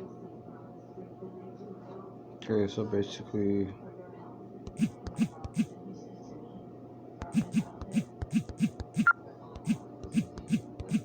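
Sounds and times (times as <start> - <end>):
keyboard typing taps: 4.7 - 5.7, 7.2 - 11.0.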